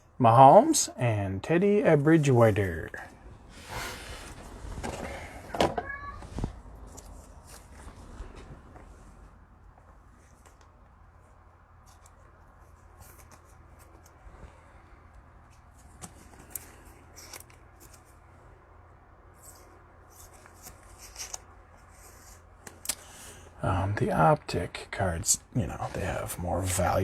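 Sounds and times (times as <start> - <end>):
cards rustling: 11.8 - 14.3, 15.4 - 18.4, 19.3 - 23.2
cards and plastic clicking: 15.5 - 18.2, 20.2 - 21.5.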